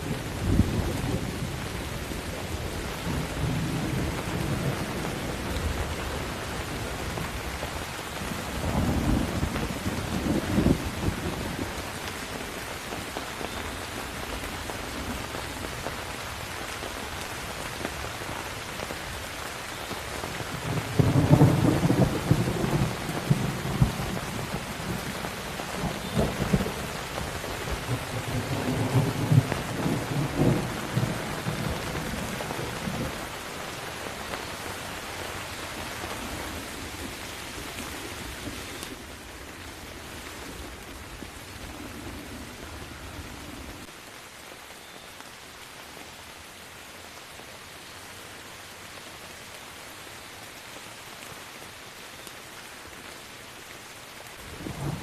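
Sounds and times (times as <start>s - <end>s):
steady rain falling: 0.0s - 55.0s
thunder rumbling: 8.1s - 11.8s, 20.5s - 33.4s, 54.4s - 55.0s.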